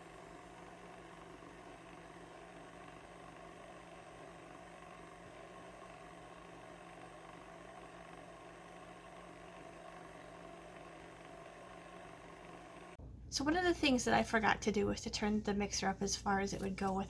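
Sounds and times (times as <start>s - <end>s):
stand mixer motor running: 0.0s - 13.0s.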